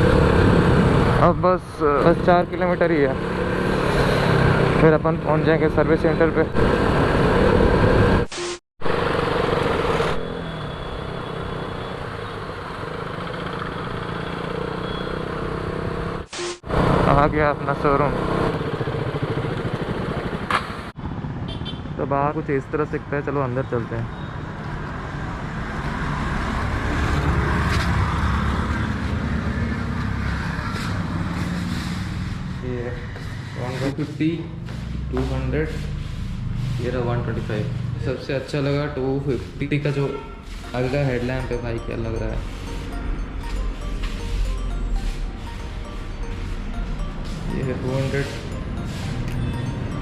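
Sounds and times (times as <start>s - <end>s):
motorcycle engine running: 12.5s - 21.8s
vehicle engine droning past: 24.8s - 40.6s.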